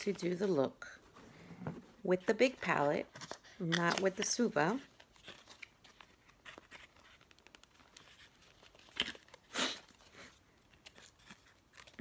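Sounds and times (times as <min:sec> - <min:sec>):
packaging rustling and clicking: 0:03.1 - 0:12.0
packaging crinkles: 0:03.2 - 0:12.0.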